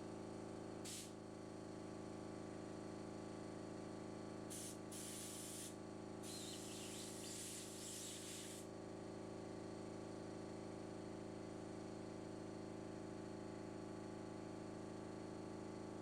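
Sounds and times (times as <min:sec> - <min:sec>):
aerosol spray hissing: 0:00.9 - 0:01.1, 0:04.5 - 0:08.6
steady low hum: 0:04.5 - 0:08.7.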